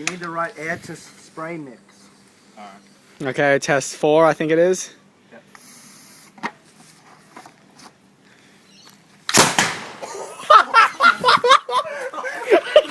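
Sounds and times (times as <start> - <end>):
potato gun bang: 9.3 - 10.0.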